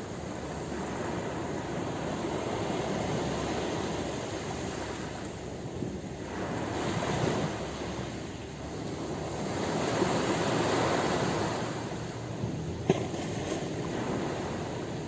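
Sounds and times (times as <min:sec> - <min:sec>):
ocean waves washing: 0:00.0 - 0:15.0.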